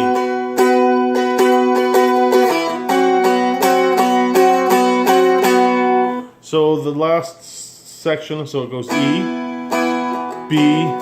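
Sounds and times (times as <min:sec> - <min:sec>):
dulcimer strummed in chords: 0:00.0 - 0:06.2, 0:08.9 - 0:11.0.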